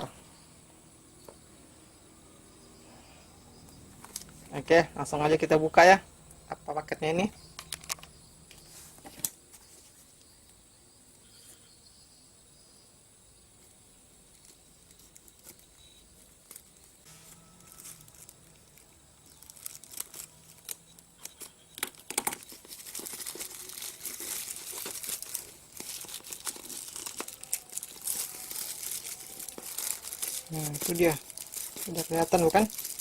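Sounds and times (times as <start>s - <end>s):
packaging crinkling and tearing: 14.3s - 33.0s.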